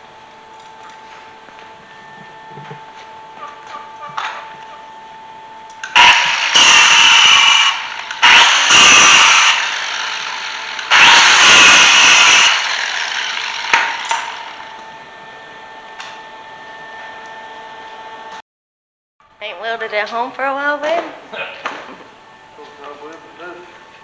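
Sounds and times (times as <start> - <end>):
angle grinder on steel: 5.8 - 14.8.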